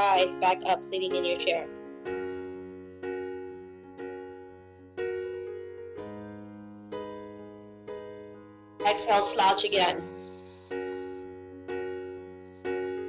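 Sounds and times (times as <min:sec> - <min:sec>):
soft piano chords: 0:00.0 - 0:13.0.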